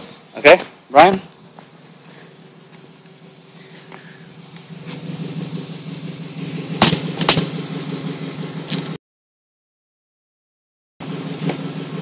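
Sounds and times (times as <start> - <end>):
car engine idling: 0.0 - 9.0, 11.0 - 12.0
sharp knocks: 6.8 - 7.6.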